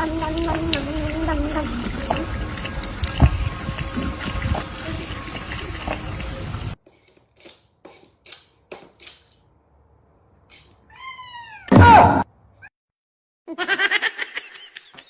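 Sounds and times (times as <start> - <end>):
running water with clinks: 0.0 - 9.4.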